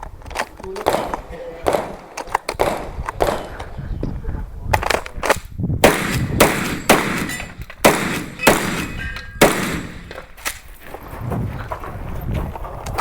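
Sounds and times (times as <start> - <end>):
gunshots: 0.8 - 3.7, 5.8 - 10.6.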